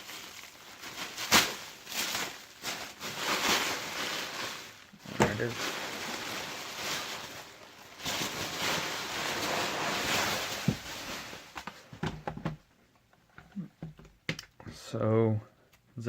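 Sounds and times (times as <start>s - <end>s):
packing material crinkling: 0.0s - 11.9s.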